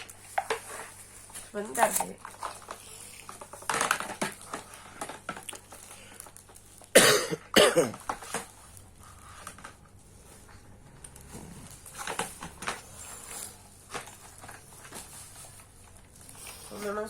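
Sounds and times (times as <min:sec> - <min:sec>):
person coughing: 0:06.9 - 0:08.0.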